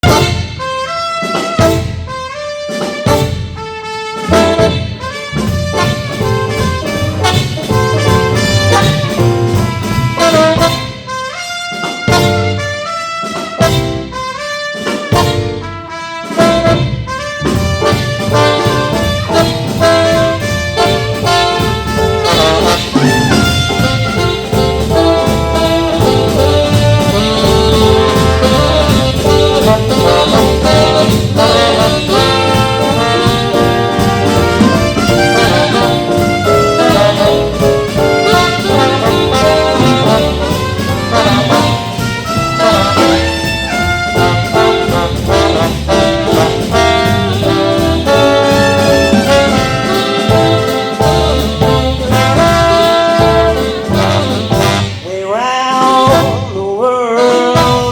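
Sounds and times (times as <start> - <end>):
swing band playing: 0.0 - 57.9
trumpet and saxophone melody: 0.0 - 57.9.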